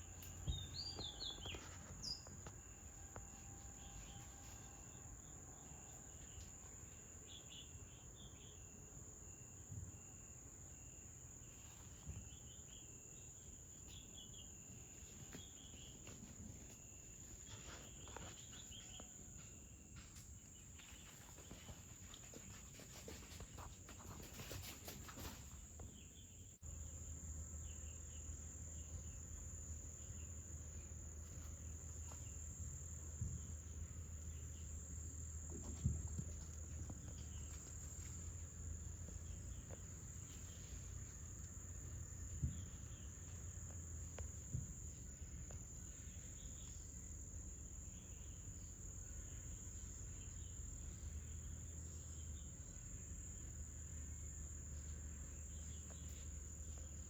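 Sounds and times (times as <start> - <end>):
insects trilling: 26.6 - 57.0.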